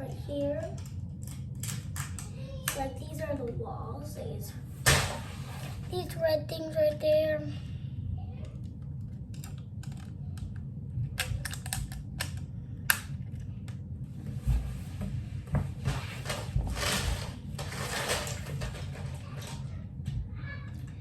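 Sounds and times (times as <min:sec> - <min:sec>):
plastic bricks clicking: 0:11.2 - 0:12.4.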